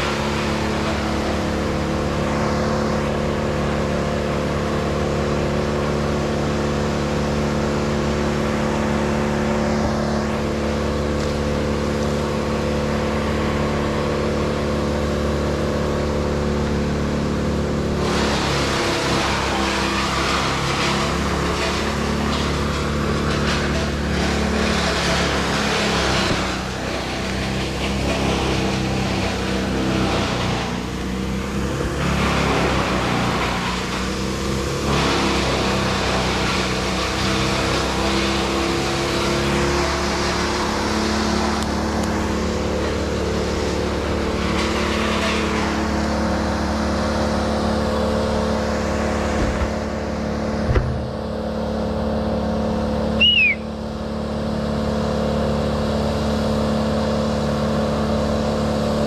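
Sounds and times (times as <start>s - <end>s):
engine running: 0.0s - 59.0s
sharp knock: 50.7s - 51.1s.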